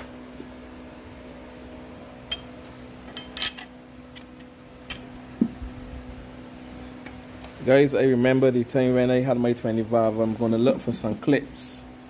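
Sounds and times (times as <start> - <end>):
steady low hum: 0.0 - 12.0
metal tools clinking: 2.3 - 5.1.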